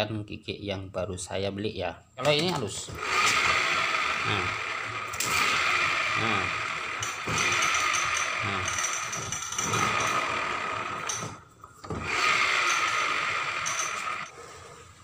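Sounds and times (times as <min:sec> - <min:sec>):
gears whirring: 0:03.0 - 0:14.4.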